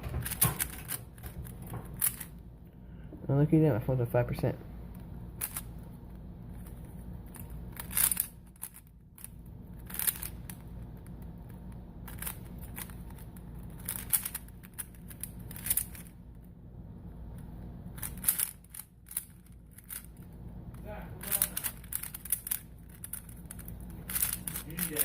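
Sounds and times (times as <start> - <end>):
puzzle cube layers clicking: 6.6 - 16.1, 18.0 - 20.3, 21.2 - 25.0.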